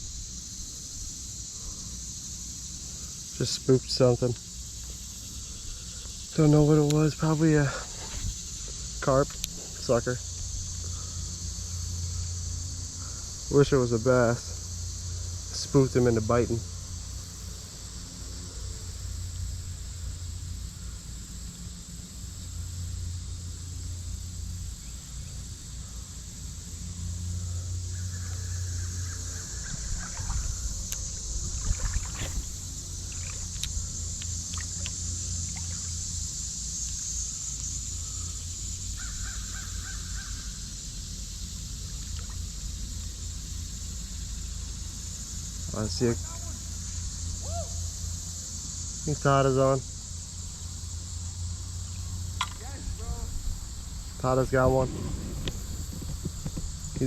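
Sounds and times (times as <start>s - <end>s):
high insect drone: 0.0s - 57.0s
water and wading rumble: 29.4s - 36.0s, 52.8s - 57.0s.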